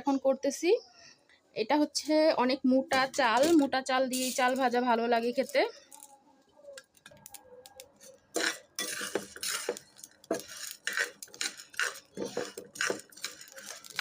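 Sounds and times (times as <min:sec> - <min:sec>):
metal utensil scraping rice in pan: 0:03.4 - 0:05.8, 0:08.0 - 0:14.0.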